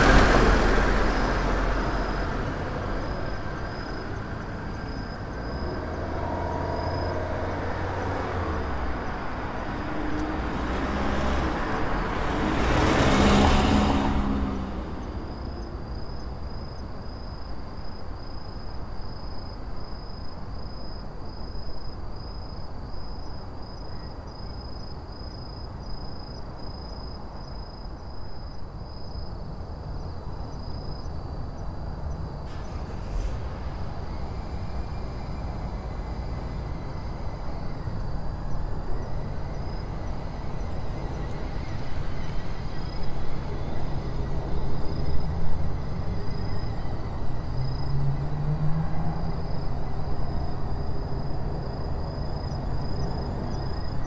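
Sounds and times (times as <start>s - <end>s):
vehicle driving past: 0.0s - 17.4s, 32.4s - 54.0s
insects chirping: 0.0s - 54.0s.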